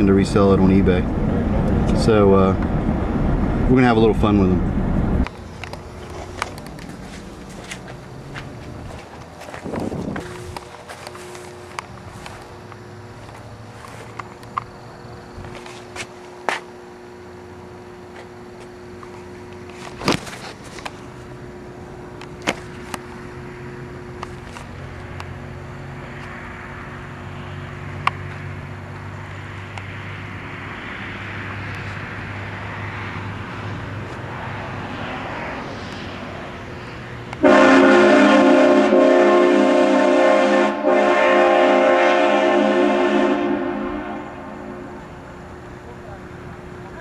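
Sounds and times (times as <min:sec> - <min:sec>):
pickup truck engine hum: 0:00.0 - 0:47.0
train horn chord: 0:37.4 - 0:45.1.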